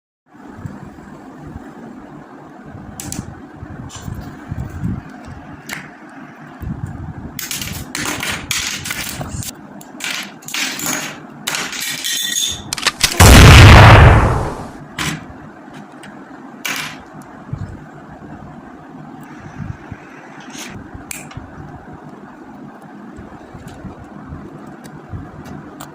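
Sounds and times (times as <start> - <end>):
loud rumbling burst: 13.2 - 14.8.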